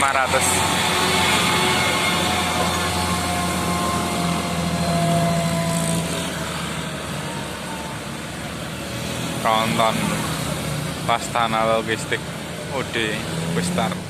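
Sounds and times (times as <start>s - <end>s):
heavy vehicle engine driving past: 0.0s - 13.8s.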